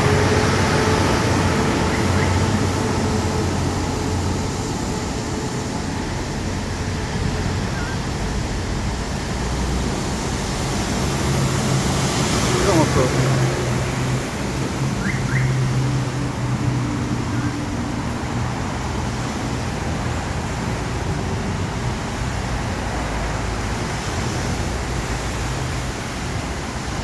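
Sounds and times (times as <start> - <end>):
diesel truck engine idling: 0.0 - 23.8.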